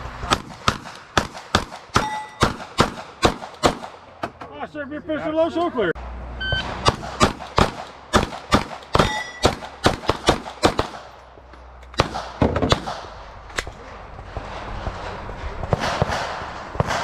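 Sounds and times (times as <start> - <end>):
pistol shots: 0.3 - 4.0, 6.8 - 11.2, 12.0 - 13.2.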